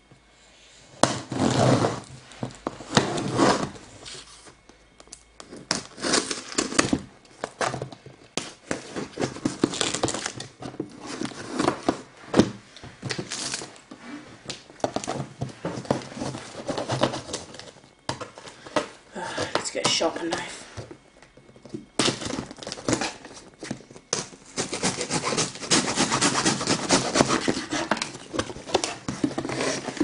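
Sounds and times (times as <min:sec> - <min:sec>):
crinkling and scraping: 0:01.0 - 0:30.0
tape and cardboard being cut: 0:22.0 - 0:30.0.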